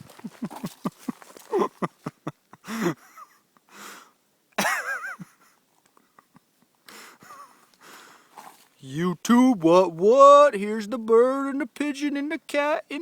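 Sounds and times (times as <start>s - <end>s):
breathy huffs: 6.9s - 8.5s.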